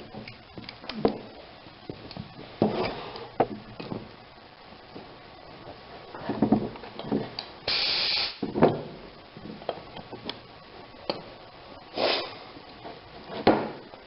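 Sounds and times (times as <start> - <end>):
compressed air hiss: 7.7 - 8.4, 11.9 - 12.5.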